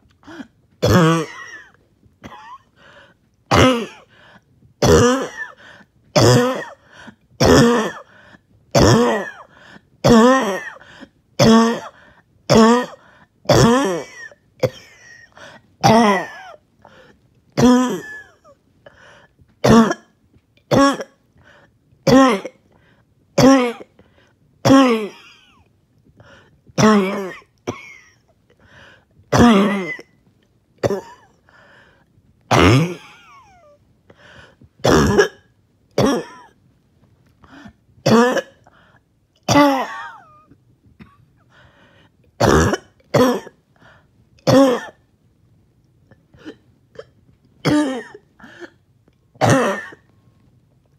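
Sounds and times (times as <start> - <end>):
person coughing harshly: 0.2 - 2.7, 3.5 - 4.1, 4.8 - 16.6, 17.6 - 18.6, 19.6 - 21.2, 22.1 - 22.6, 23.4 - 24.0, 24.6 - 25.6, 26.8 - 28.3, 29.3 - 30.2, 30.8 - 31.4, 32.5 - 33.8, 34.8 - 36.6, 37.5 - 38.8, 39.4 - 40.4, 42.4 - 43.6, 44.4 - 45.0, 46.4 - 48.8, 49.4 - 50.1
throat clearing: 0.2 - 2.7, 4.8 - 10.8, 32.5 - 33.8, 34.8 - 36.6, 42.4 - 43.6, 46.4 - 48.8.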